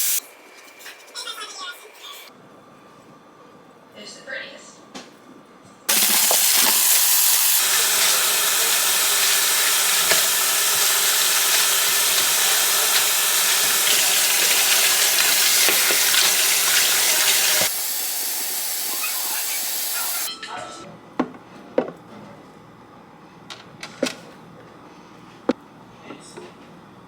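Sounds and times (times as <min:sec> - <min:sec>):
loud steady rushing hiss: 0:00.0 - 0:00.2, 0:05.9 - 0:20.3.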